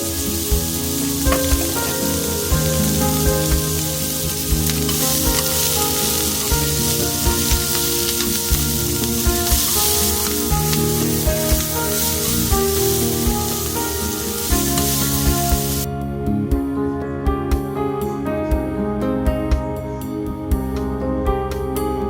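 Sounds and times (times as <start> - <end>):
food sizzling in a pan: 0.0 - 15.9
background music with held notes: 0.0 - 22.0.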